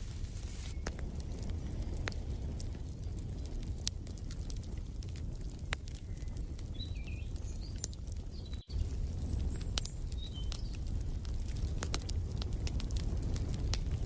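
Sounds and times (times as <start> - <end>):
fire crackling and popping: 0.0 - 14.0
small birds chirping: 5.2 - 11.1.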